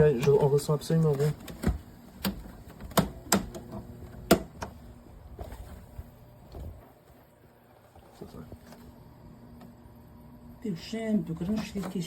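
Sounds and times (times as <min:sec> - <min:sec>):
clicks and knocks of handling: 0:00.2 - 0:04.8.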